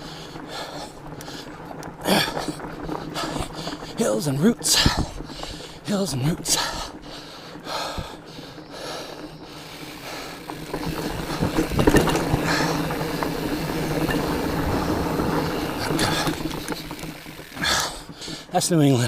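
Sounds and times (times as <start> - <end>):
bike tyre noise: 0.0 - 19.0
bike knocks and rattles: 1.9 - 8.2, 9.9 - 18.4
bike freewheel ratchet buzzing: 6.5 - 18.4.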